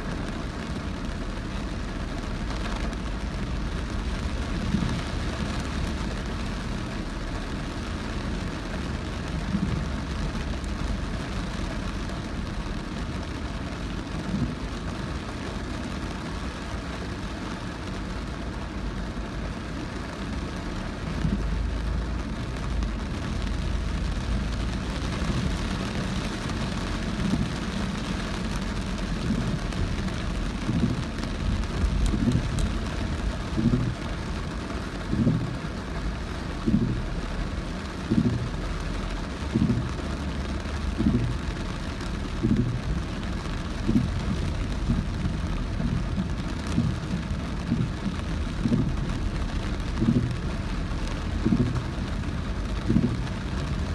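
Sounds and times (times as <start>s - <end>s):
car tyres rumbling on wet road: 0.0s - 53.9s
heavy rain: 0.0s - 53.9s
soft low thumps: 20.9s - 53.9s.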